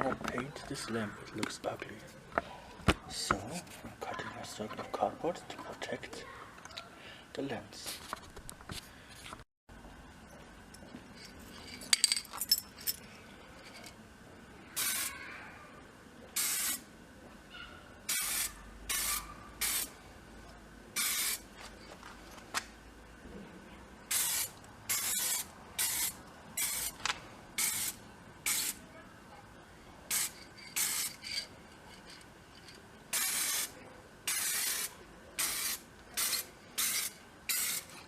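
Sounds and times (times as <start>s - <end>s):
metal clinks and scrapes: 10.8s - 14.0s, 30.2s - 32.8s
spray paint can hissing: 14.8s - 15.1s, 16.4s - 16.8s, 18.1s - 19.9s, 21.0s - 21.5s, 24.1s - 27.0s, 27.6s - 28.8s, 30.1s - 31.2s, 33.1s - 33.7s, 34.3s - 37.9s.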